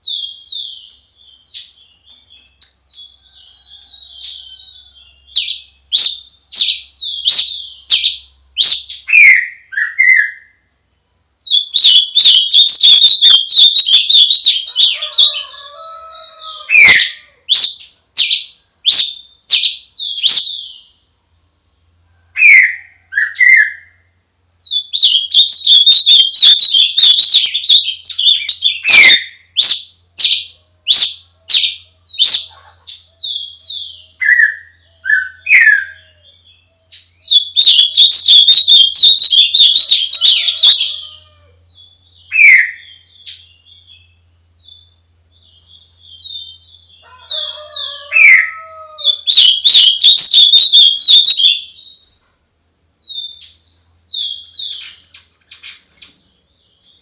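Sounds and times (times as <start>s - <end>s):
songbird singing chirps and trills: 0.0s - 52.3s, 53.0s - 57.0s
down-slurred whistled bird notes: 11.5s - 14.8s, 24.6s - 41.0s, 49.1s - 52.1s.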